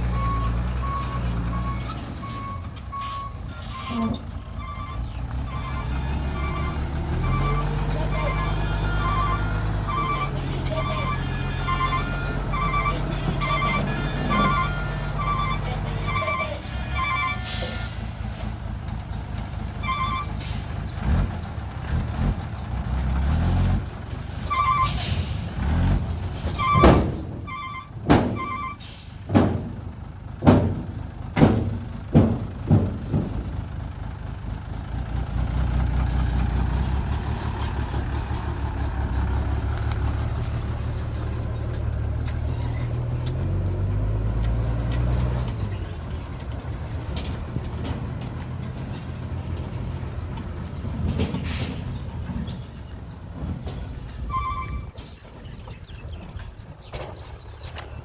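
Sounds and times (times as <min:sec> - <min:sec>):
low diesel engine rumble: 0:00.0 - 0:58.0
reversing alarm beeping: 0:00.1 - 0:18.0, 0:19.8 - 0:20.4, 0:24.5 - 0:25.0, 0:26.6 - 0:28.9
loud sharp bangs and clanks: 0:28.0 - 0:28.5, 0:29.1 - 0:33.6.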